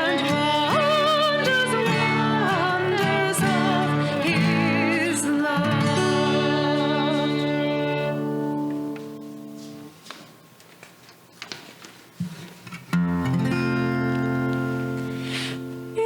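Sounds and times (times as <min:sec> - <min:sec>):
person singing: 0:00.0 - 0:09.1
acoustic guitar chords: 0:00.0 - 0:10.0, 0:12.9 - 0:16.0.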